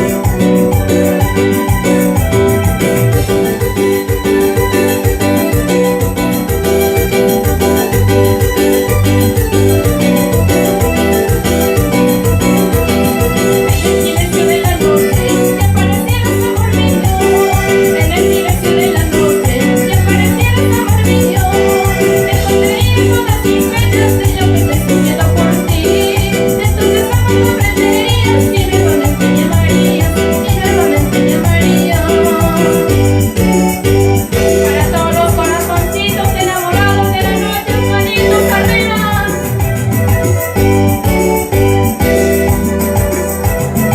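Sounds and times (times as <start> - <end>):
steady bass beat: 0.0 - 24.6, 29.0 - 43.9
electronic keyboard organ melody: 0.0 - 43.9.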